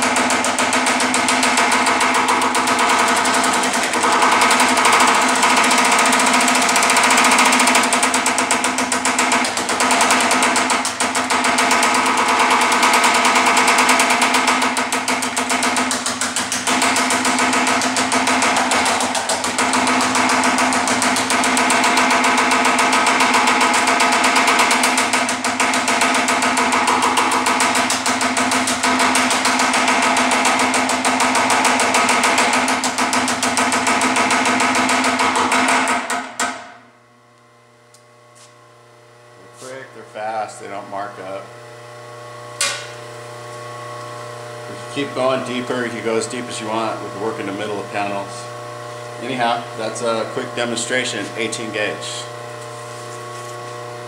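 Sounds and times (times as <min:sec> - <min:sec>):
power hammer pounding sheet metal: 0:00.0 - 0:36.8.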